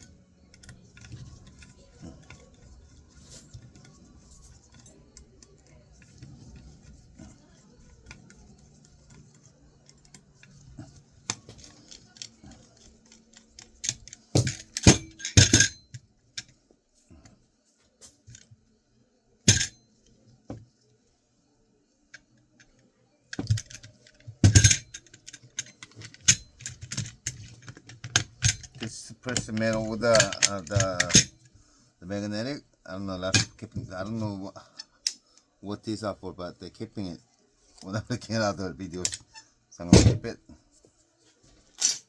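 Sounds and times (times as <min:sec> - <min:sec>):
small metal parts clicking: 0:11.3 - 0:16.0, 0:19.5 - 0:19.8, 0:23.4 - 0:31.4, 0:33.3 - 0:33.6, 0:41.8 - 0:42.0.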